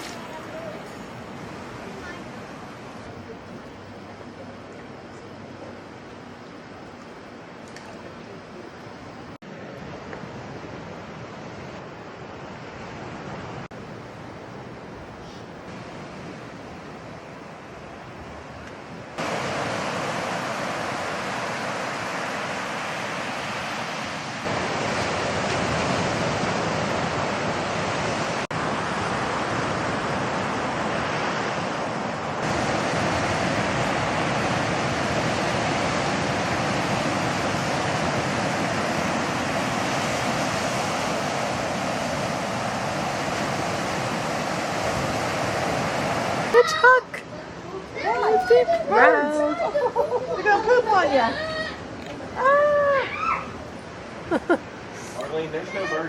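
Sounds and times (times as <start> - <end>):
ocean waves breaking on beach: 0.0 - 8.7, 9.4 - 56.0.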